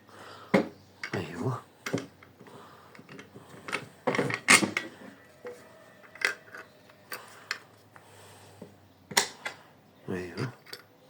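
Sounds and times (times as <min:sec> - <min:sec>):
small metal parts clinking: 0:06.0 - 0:07.6.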